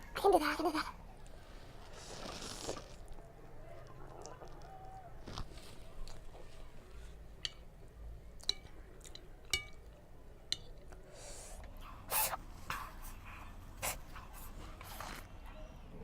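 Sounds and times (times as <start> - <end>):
utensils clinking against bowl: 8.4 - 10.9
person sniffing and gasping: 12.1 - 12.4.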